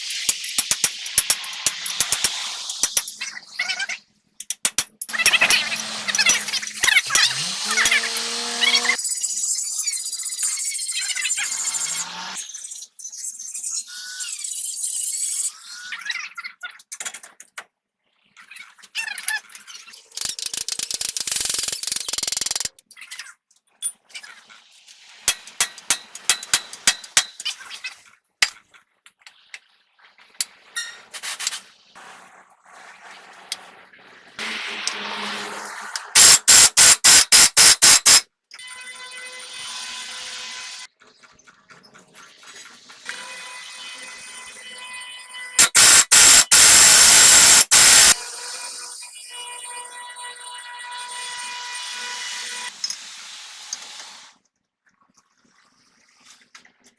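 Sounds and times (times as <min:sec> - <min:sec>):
loud hissing rush: 0:00.0 - 0:03.2, 0:34.4 - 0:38.2, 0:45.6 - 0:48.2
sharp metallic clicks and clinks: 0:00.0 - 0:03.3, 0:04.4 - 0:08.1, 0:20.2 - 0:23.1, 0:25.3 - 0:27.5, 0:45.6 - 0:48.2.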